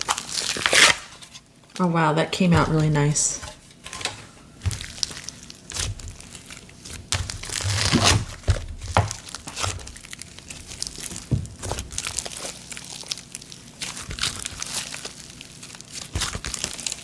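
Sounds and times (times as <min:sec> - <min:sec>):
slime squished by hand: 0:04.7 - 0:17.0.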